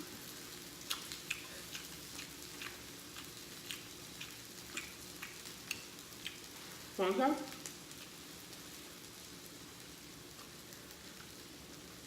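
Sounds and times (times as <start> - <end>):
person chewing food: 0.8 - 6.5.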